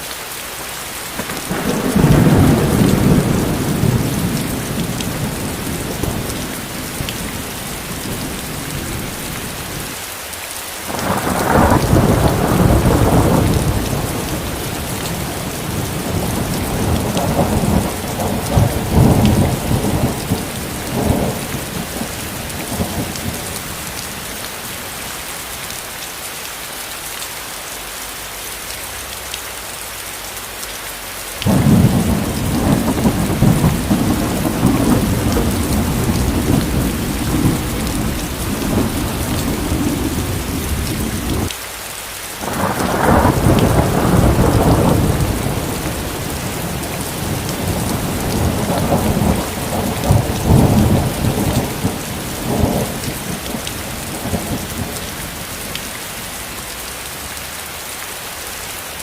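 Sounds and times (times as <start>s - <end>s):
steady rain: 0.0s - 59.0s
thunder rolling: 1.2s - 9.8s, 10.9s - 23.6s, 31.4s - 41.5s, 42.4s - 55.4s.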